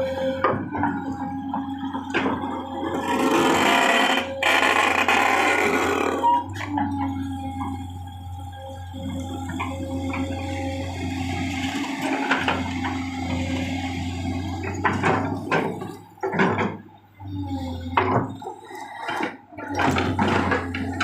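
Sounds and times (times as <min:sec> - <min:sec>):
diesel engine running: 0:00.0 - 0:21.0.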